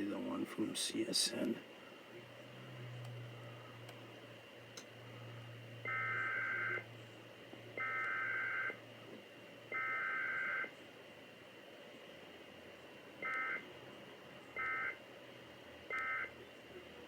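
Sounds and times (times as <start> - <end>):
chirping two-tone digital data bursts: 5.9 - 6.9, 7.8 - 8.8, 9.7 - 10.7, 13.2 - 13.6, 14.6 - 15.0, 15.9 - 16.4.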